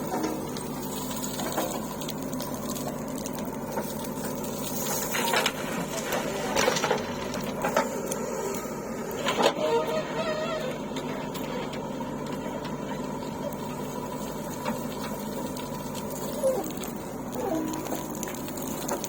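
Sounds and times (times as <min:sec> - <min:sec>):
diesel engine clattering: 0:00.0 - 0:19.0.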